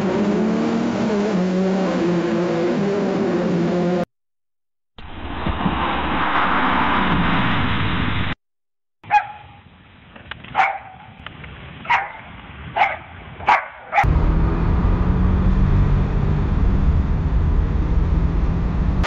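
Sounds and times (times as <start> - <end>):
loud steady low rumble: 5.0 - 8.4, 14.1 - 19.0
dog barking: 9.1 - 9.6, 10.5 - 11.1, 11.9 - 14.1.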